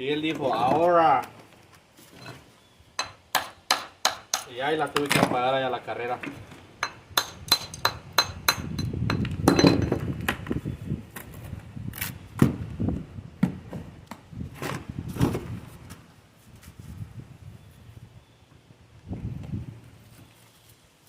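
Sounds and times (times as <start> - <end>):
metal tool tapping on stone: 3.0 - 4.6, 6.8 - 10.0.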